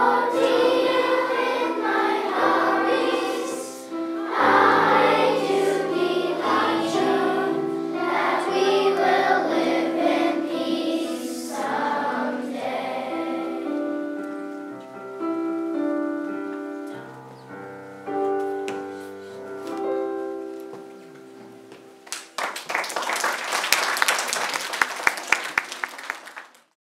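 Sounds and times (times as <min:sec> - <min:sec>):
children's choir singing: 0:00.0 - 0:14.6.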